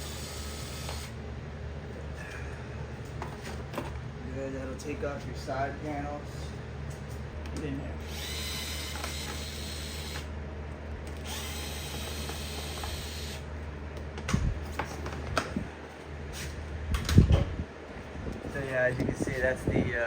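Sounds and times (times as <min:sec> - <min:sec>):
power drill running: 0:00.0 - 0:01.2, 0:08.0 - 0:10.3, 0:11.1 - 0:13.5.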